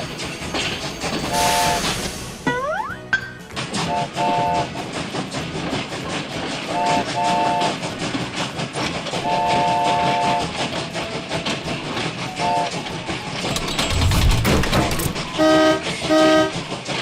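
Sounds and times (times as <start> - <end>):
train wheels clattering on rails: 0.0 - 2.5, 3.2 - 17.0
train whistle: 1.3 - 2.0, 3.8 - 4.8, 6.7 - 7.8, 9.2 - 10.6, 12.3 - 13.0, 15.2 - 17.0.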